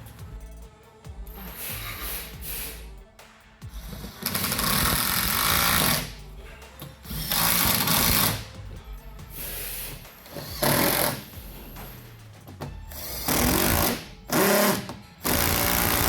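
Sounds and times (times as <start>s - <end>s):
power tool running fasteners: 4.2s - 6.2s, 7.1s - 8.5s, 10.3s - 11.9s, 13.0s - 16.0s.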